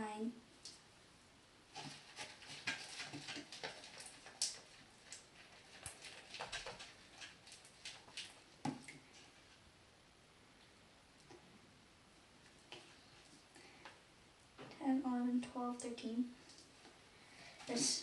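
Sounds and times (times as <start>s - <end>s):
slime squelching while stirred: 1.7s - 9.8s.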